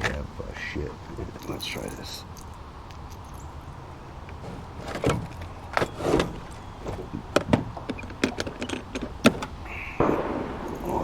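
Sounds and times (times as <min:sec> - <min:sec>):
low steady background: 0:00.0 - 0:11.0
sharp knocks and clicks: 0:02.3 - 0:11.0.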